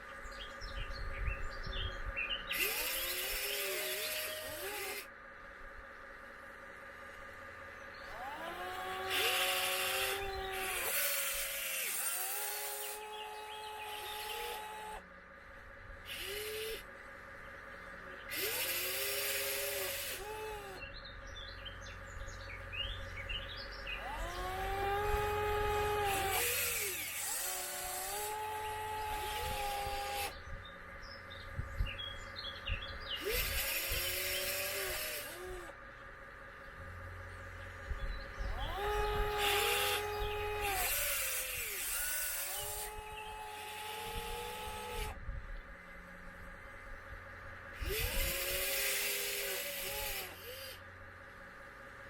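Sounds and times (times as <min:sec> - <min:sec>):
electric motors whining: 0:00.0 - 0:52.0
rough rasping noise: 0:08.2 - 0:15.0, 0:24.0 - 0:30.4, 0:38.6 - 0:45.2.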